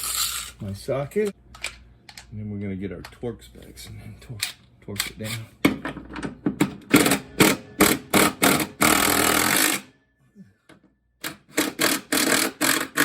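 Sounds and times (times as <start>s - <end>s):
electric impact wrench bursts: 6.9s - 9.9s, 11.2s - 13.0s.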